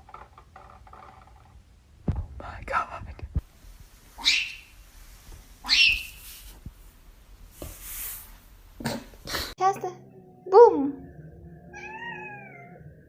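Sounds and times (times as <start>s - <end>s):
cat crying: 11.7s - 12.8s.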